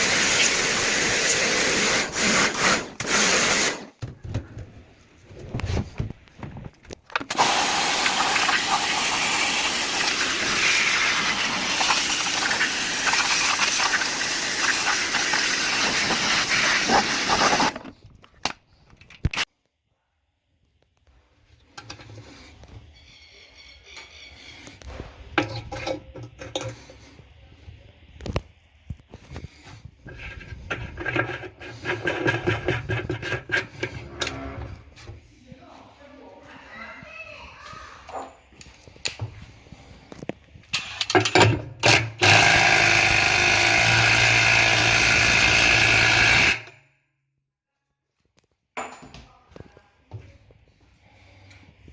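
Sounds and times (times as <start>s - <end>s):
pressurised water spray hissing: 0.0s - 3.8s, 7.3s - 17.7s.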